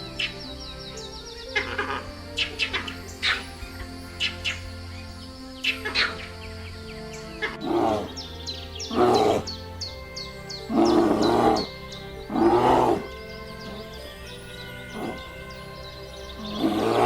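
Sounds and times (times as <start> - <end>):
background music: 0.0 - 17.0
loud animal calls: 7.2 - 9.6, 10.4 - 14.0, 14.9 - 15.6, 16.4 - 17.0.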